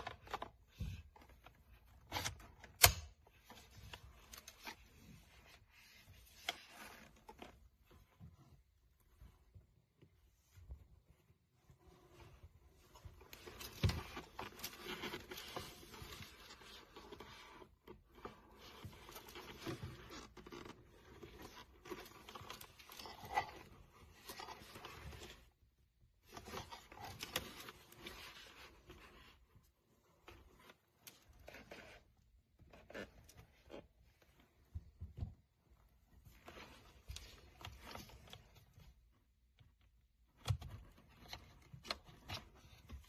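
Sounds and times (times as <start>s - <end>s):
handling noise rustling and scraping: 0.0s - 43.0s.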